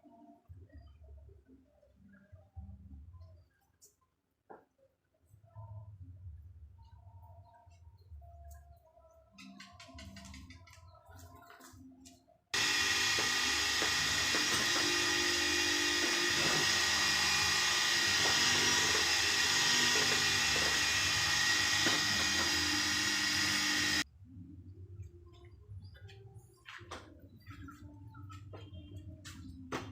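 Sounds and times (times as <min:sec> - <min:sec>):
wood router whining: 0:12.6 - 0:24.0.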